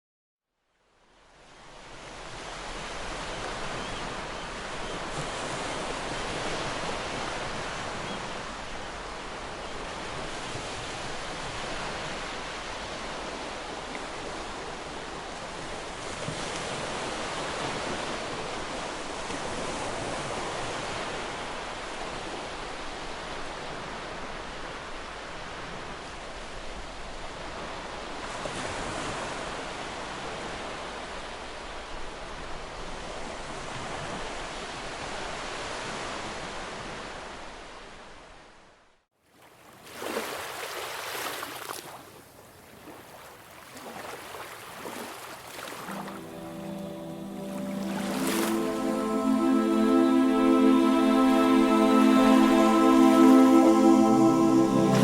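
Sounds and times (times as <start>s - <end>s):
ocean waves breaking: 42.8s - 55.0s.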